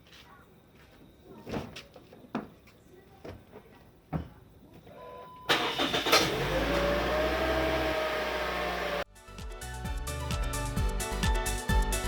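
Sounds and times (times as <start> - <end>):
car engine cranking and idling: 5.5 - 9.1
engine whine: 5.5 - 9.1.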